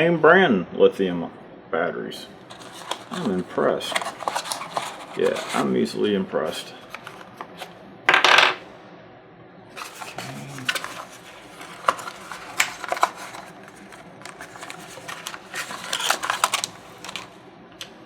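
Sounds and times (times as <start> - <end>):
packaging clicks and crinkles: 2.4 - 5.7, 6.6 - 7.7, 9.8 - 18.0
packaging rustling: 2.4 - 5.8, 6.5 - 7.7, 9.8 - 17.4.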